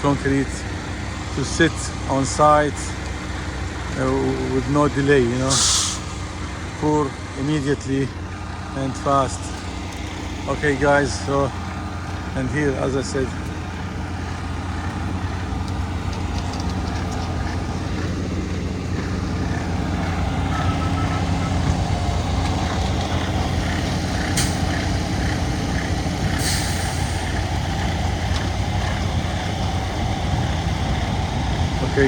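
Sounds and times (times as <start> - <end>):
diesel engine running: 0.0 - 32.0
short hisses: 5.5 - 6.2.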